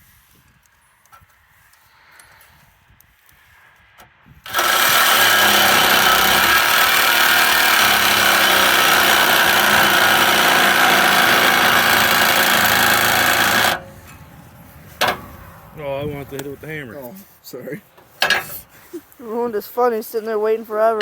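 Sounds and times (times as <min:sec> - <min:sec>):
power tool running: 0:04.4 - 0:14.2.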